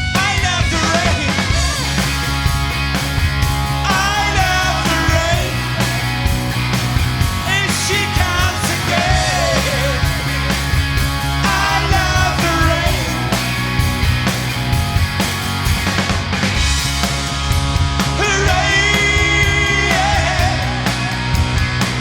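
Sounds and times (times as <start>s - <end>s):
rock band with drum beat: 0.0s - 22.0s
person singing lead vocal: 0.1s - 2.0s, 3.8s - 6.2s, 7.4s - 10.5s, 11.2s - 13.6s, 18.1s - 21.4s.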